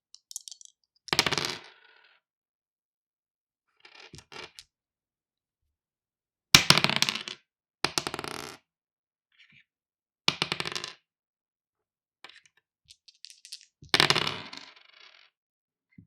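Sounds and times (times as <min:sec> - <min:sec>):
dice clattering on wooden table: 0:00.1 - 0:01.8, 0:03.9 - 0:04.7, 0:06.6 - 0:08.6, 0:10.3 - 0:11.0, 0:12.3 - 0:15.3.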